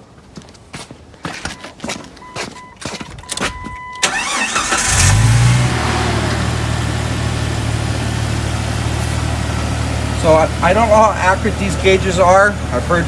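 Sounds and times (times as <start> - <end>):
engine revving and idling: 4.1 - 13.0.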